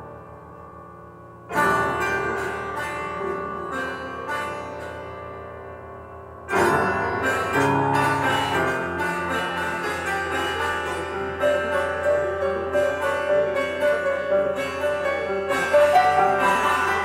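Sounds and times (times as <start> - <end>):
improvised piano music: 6.4 - 17.0.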